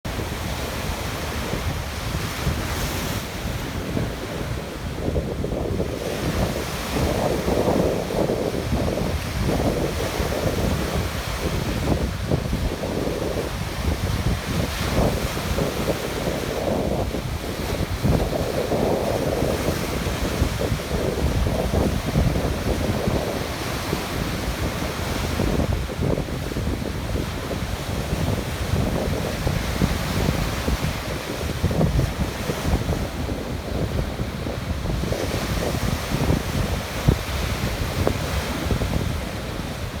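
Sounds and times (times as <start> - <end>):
wind rumbling on microphone: 0.0 - 40.0
waves breaking: 0.1 - 40.0.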